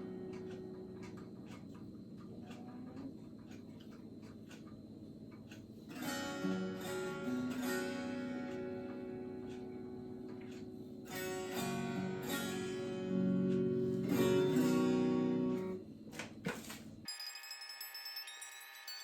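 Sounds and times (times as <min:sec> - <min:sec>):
guitar chords strummed: 0:05.9 - 0:15.8
music with high thin notes: 0:06.0 - 0:15.8.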